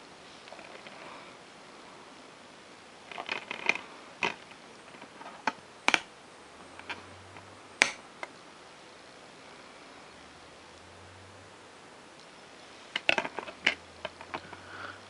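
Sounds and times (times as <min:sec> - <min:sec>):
plastic case clicking: 0:03.1 - 0:06.1, 0:13.0 - 0:14.6.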